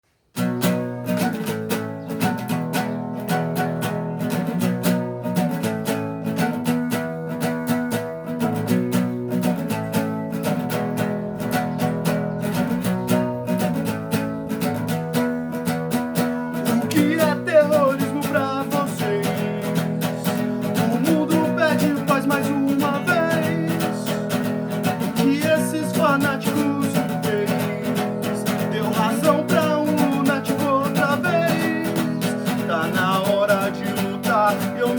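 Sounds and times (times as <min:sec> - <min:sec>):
strummed guitar chords: 0:00.4 - 0:34.9
melody with bending notes: 0:08.2 - 0:16.7.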